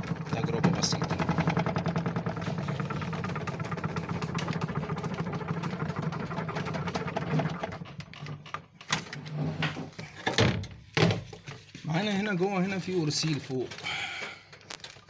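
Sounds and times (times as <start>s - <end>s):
spin-dryer motor whirring: 0.0s - 8.4s.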